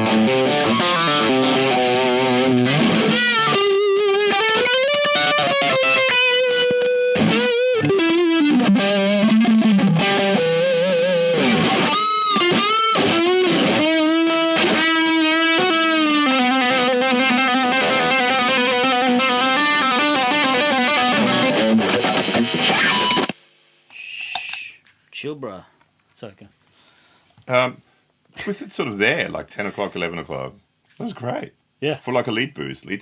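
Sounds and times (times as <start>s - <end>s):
distorted electric guitar lead: 0.0s - 23.4s.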